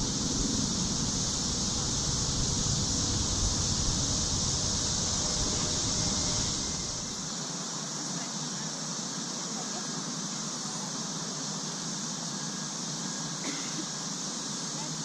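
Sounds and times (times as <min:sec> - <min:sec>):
low rumble: 0:00.0 - 0:07.2
night insect chorus chirring: 0:00.0 - 0:15.0.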